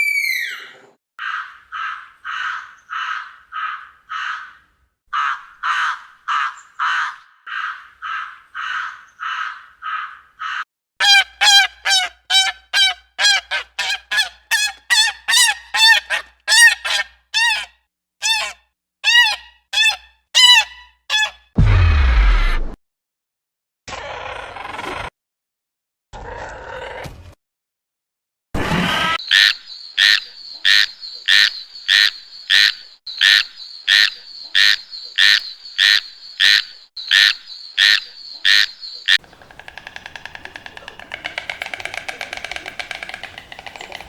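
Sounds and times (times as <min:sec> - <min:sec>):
harsh cawing calls: 0:01.2 - 0:21.4, 0:29.3 - 0:44.0
whistled call sliding down: 0:38.5 - 0:44.0.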